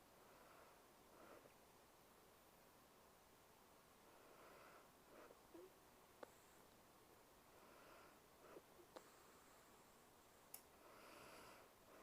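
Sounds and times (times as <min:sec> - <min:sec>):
soft breath: 0:00.0 - 0:01.7, 0:04.0 - 0:06.8, 0:07.4 - 0:12.0
faint hiss: 0:00.0 - 0:12.0.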